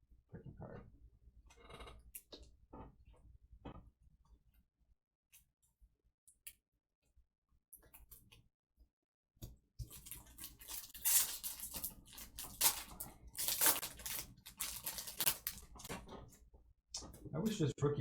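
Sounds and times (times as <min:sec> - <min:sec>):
foil wrapper ripped and crumpled: 0:09.9 - 0:15.9.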